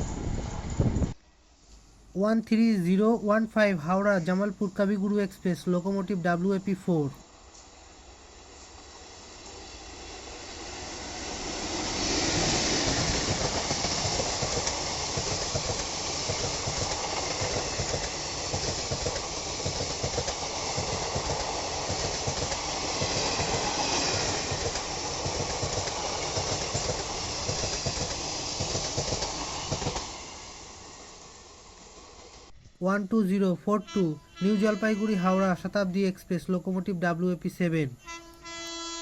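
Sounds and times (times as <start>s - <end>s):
rushing hiss of passing train: 0.0s - 36.7s, 38.1s - 39.0s
clickety-clack of train wheels: 11.3s - 30.4s.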